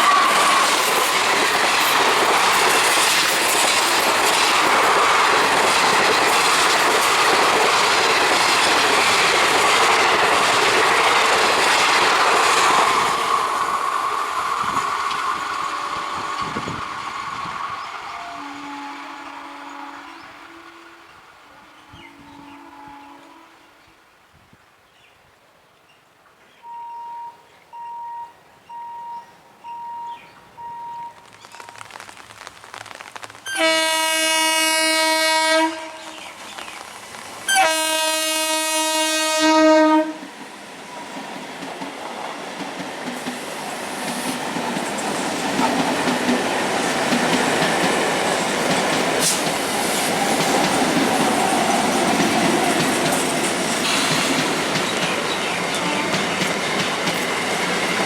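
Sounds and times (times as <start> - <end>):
train horn blasts: 0.0 - 1.1, 18.1 - 24.0, 33.5 - 36.3, 37.5 - 40.3, 55.7 - 56.4
train wheels clacking over rail joints: 0.0 - 18.4, 40.2 - 58.0
short warning beeps: 26.6 - 31.8.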